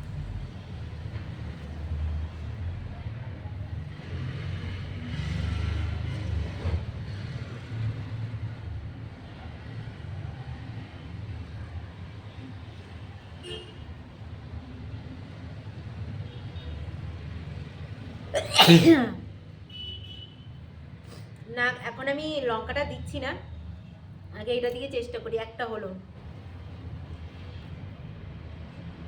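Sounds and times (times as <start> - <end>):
breathy hiss: 18.4 - 19.2.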